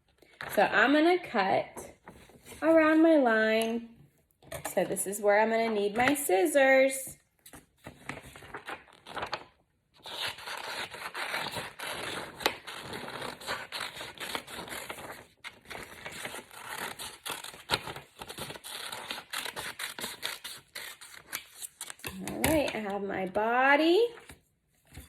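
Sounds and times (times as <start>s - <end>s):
paper rustling: 7.5s - 9.6s
scissors cutting paper: 10.0s - 22.9s.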